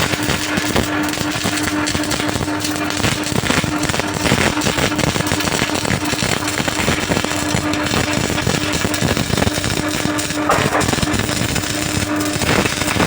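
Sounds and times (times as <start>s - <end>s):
welding arc crackling: 0.0s - 13.0s
low hum: 10.5s - 11.5s.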